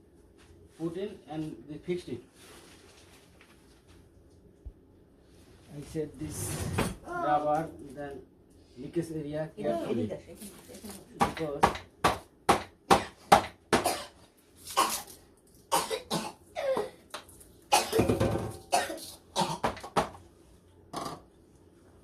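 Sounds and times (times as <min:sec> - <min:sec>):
person coughing: 0:13.8 - 0:17.0, 0:17.7 - 0:20.0.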